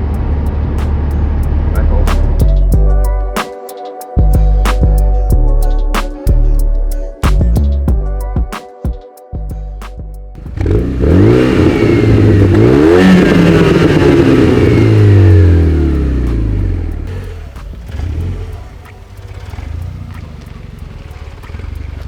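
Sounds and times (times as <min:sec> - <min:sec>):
car engine accelerating hard: 0:10.4 - 0:22.0.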